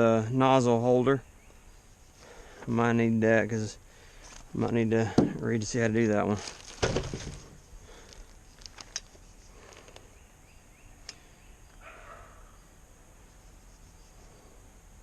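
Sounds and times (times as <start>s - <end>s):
pages rustling: 6.3s - 10.0s.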